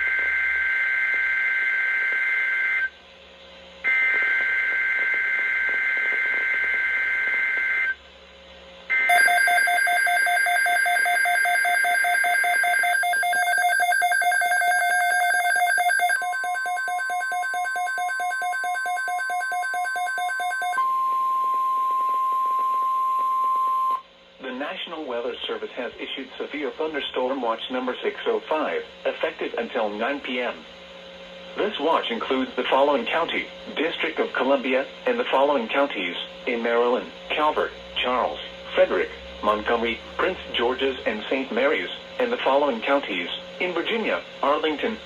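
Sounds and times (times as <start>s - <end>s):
steady single-pitch alert tone: 8.9s - 24.0s
fast-pulsing electronic alert tone: 9.1s - 20.8s.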